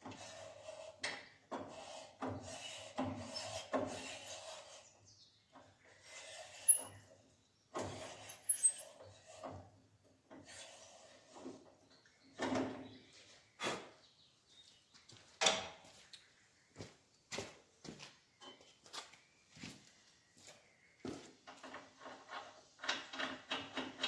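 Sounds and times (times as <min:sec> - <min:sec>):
hand tool scraping metal: 0:01.6 - 0:04.9, 0:06.1 - 0:07.0, 0:07.8 - 0:09.6.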